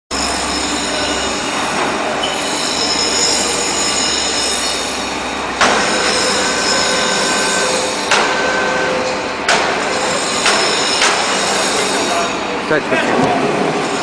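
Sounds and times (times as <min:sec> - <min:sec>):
high whining tones: 0:00.1 - 0:12.5
lathe mechanical drone: 0:00.1 - 0:14.0
sharp machine clunk: 0:05.6 - 0:06.4, 0:07.5 - 0:11.4.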